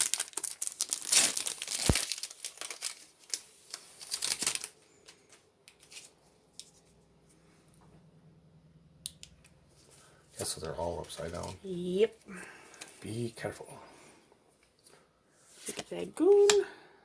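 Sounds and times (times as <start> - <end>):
foil wrapper crinkling and tearing: 0.0 - 6.8
cards being handled: 1.8 - 7.0, 9.2 - 11.6, 14.8 - 16.6.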